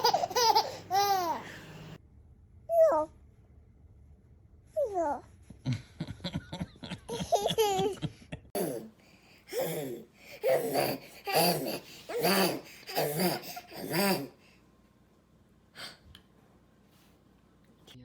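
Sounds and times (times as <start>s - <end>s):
baby laughing: 0.0s - 1.7s, 7.1s - 8.8s, 9.5s - 14.3s.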